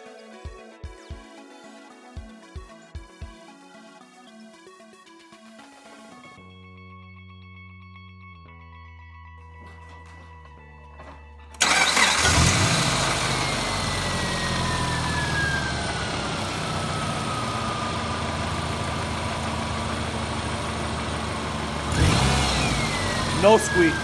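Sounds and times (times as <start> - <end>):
car engine starting and idling: 10.9 - 24.0.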